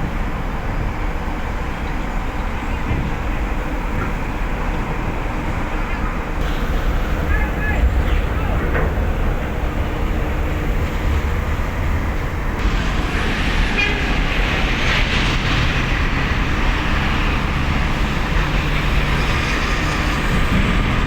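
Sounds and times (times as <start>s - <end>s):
heavy machinery low rumble: 0.0s - 21.0s
rushing hissing noise: 6.4s - 21.0s.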